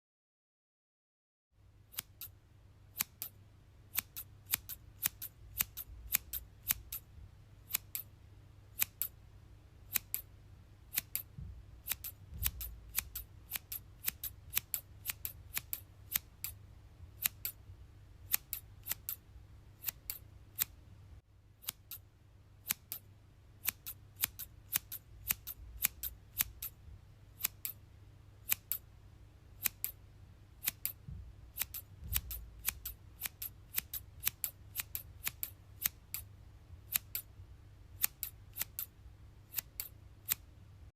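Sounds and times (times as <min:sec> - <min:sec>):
faint low background hum: 0:01.6 - 0:40.9
scissors snipping: 0:01.9 - 0:02.3, 0:03.0 - 0:07.1, 0:07.7 - 0:08.1, 0:08.8 - 0:09.2, 0:09.9 - 0:10.3, 0:10.9 - 0:16.6, 0:17.2 - 0:17.6, 0:18.3 - 0:19.2, 0:19.8 - 0:20.8, 0:21.6 - 0:22.0, 0:22.6 - 0:26.8, 0:27.4 - 0:27.8, 0:28.4 - 0:28.8, 0:29.6 - 0:30.0, 0:30.6 - 0:36.3, 0:36.9 - 0:37.3, 0:38.0 - 0:38.9, 0:39.5 - 0:40.4.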